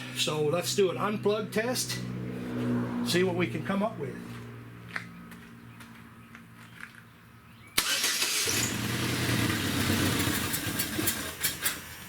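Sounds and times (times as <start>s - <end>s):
car engine starting and running: 7.8s - 12.0s.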